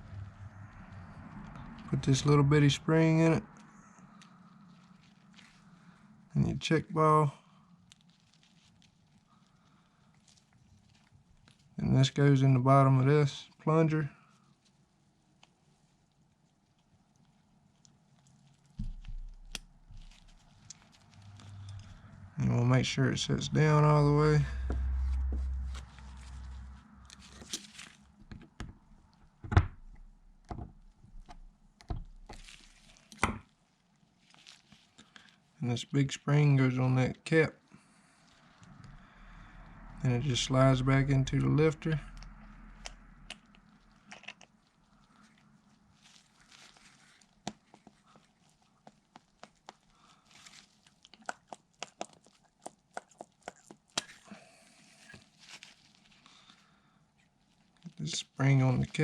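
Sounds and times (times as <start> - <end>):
low hum: 0.0 - 6.0, 18.8 - 32.6, 37.8 - 43.9.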